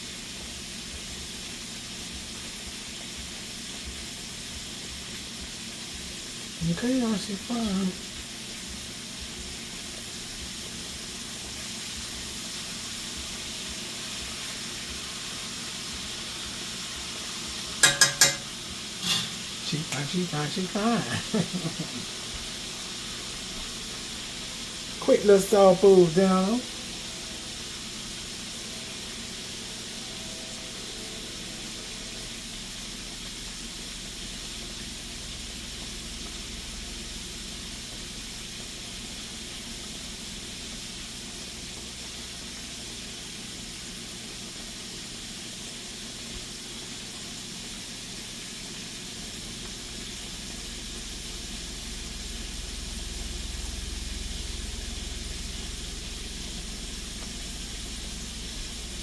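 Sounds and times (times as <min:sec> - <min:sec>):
food sizzling in hot oil: 0:00.0 - 0:59.0
low rumble: 0:26.6 - 0:43.1, 0:49.2 - 0:59.0.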